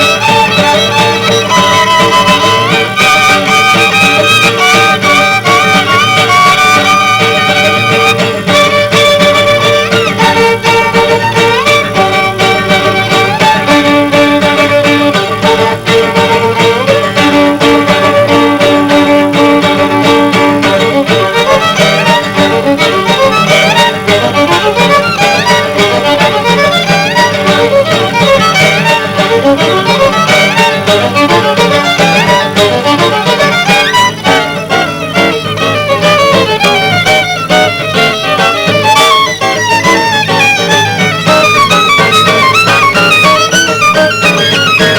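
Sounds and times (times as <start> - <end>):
guitar playing: 0.0 - 44.9
violin playing: 0.0 - 44.9.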